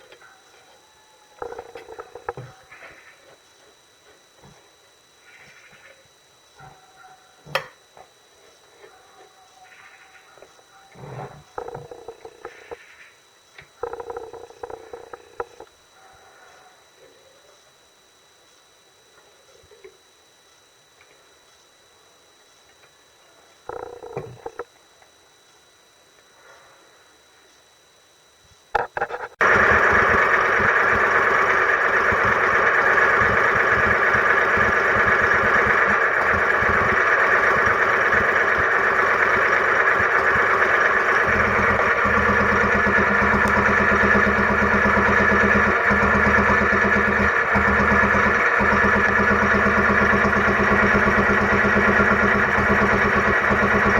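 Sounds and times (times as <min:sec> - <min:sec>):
stationary engine running: 0:01.4 - 0:02.8, 0:11.1 - 0:12.9, 0:13.8 - 0:15.7, 0:23.7 - 0:24.6, 0:28.8 - 0:53.9.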